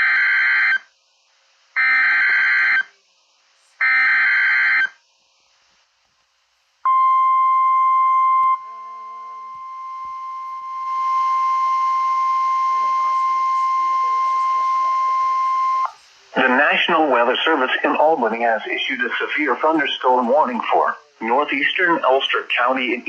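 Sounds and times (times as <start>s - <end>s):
steady single-pitch alert tone: 6.9s - 16.0s
buzzing data tones: 6.9s - 16.1s.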